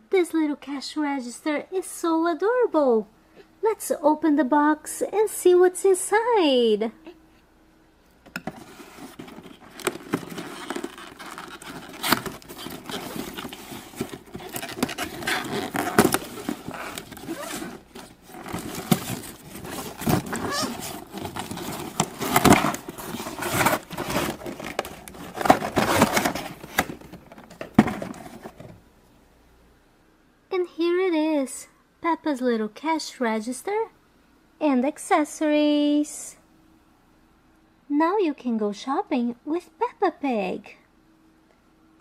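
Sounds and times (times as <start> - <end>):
packaging rustling and crinkling: 8.4 - 28.8.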